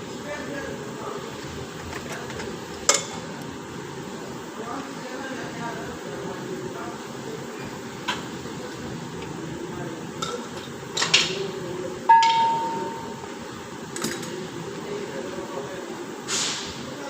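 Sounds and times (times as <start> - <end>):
metal tools knocking and clinking: 12.1 - 12.9
metallic ringing tone: 12.1 - 13.2.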